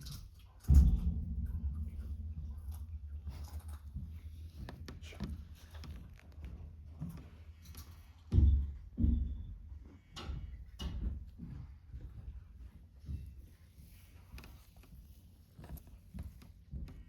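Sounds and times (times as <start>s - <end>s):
steady low rumble: 0.0s - 7.9s
low thumps and knocks: 0.6s - 7.4s, 8.2s - 12.3s.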